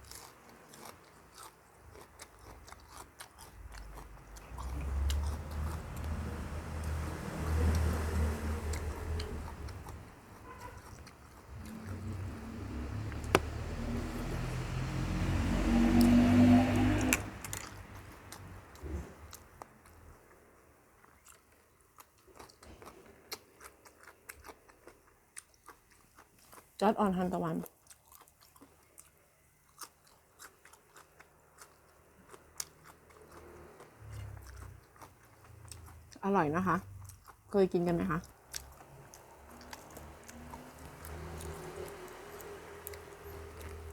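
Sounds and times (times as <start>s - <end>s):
chewing raw vegetables: 0.0s - 43.9s
low engine-like hum: 3.8s - 19.5s, 35.6s - 43.9s.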